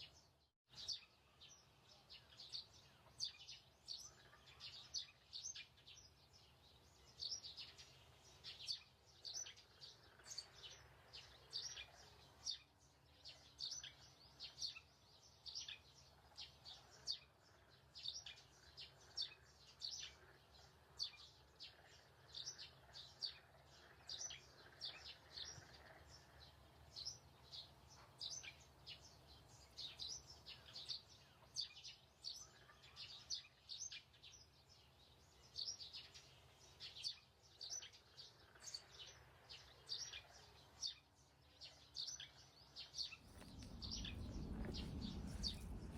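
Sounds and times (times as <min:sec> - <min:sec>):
birds chirping: 0:00.0 - 0:45.9
low steady hum: 0:43.1 - 0:45.9.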